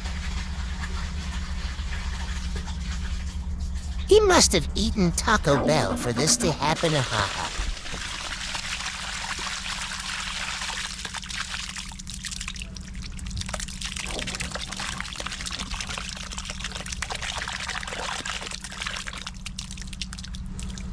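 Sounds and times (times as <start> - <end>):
steady low hum: 1.2 - 20.9
water pouring from a drain: 6.8 - 20.9
small splashes and crackles: 7.5 - 20.9.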